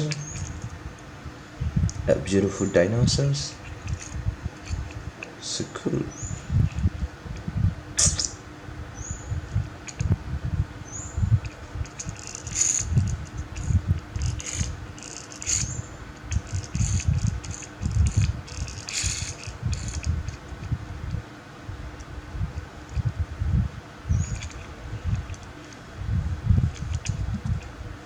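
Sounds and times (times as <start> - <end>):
plastic toys rattling and scraping: 12.0 - 20.4.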